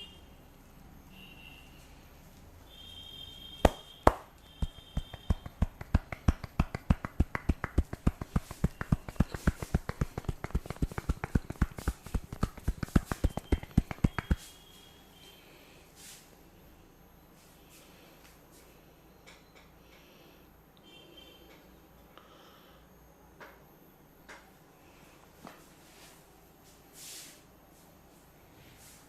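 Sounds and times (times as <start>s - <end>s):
hands tapping on a head: 3.6s - 14.5s.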